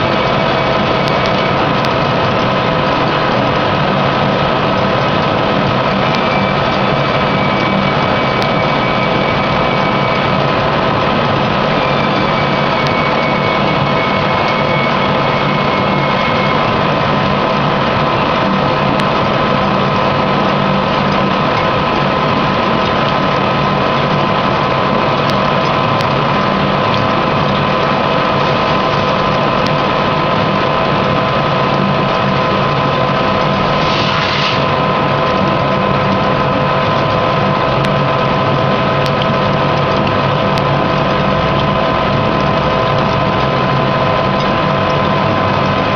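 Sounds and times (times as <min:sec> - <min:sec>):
brief high hiss: 0:33.8 - 0:34.7.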